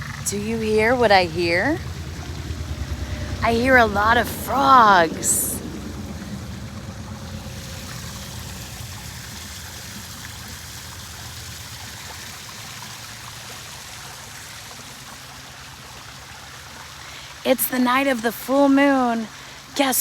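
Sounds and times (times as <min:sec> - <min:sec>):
chorus of frogs calling: 0:00.0 - 0:06.2.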